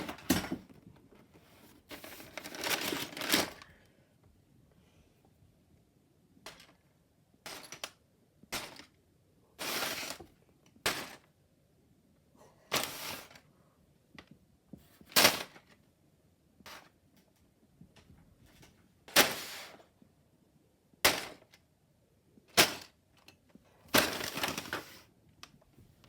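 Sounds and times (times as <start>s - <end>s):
box rustling: 1.5s - 3.6s.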